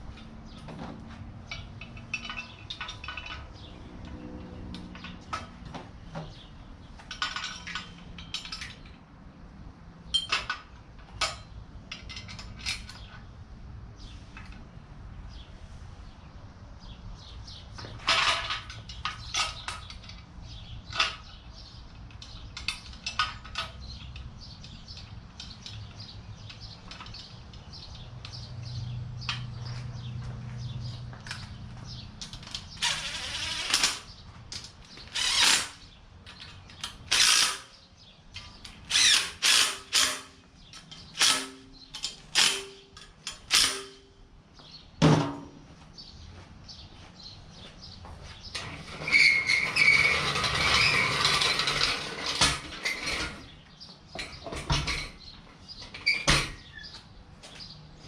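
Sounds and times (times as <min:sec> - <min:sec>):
metal clanks: 0:00.1 - 0:09.0
ratchet clicks: 0:32.2 - 0:37.8, 0:38.4 - 0:44.0.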